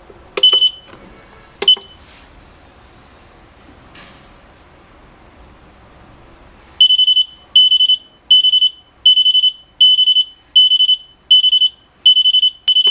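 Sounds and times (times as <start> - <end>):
kitchen timer alarm beeping: 0.4 - 0.9, 1.6 - 2.0, 6.8 - 12.9.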